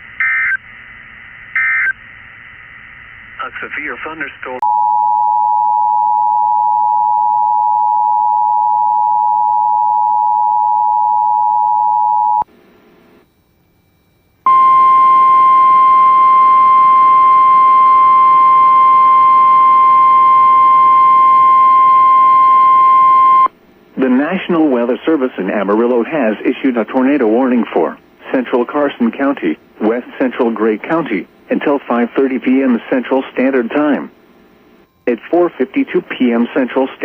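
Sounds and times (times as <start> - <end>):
steady warning alarm tone: 13.2 - 25.3.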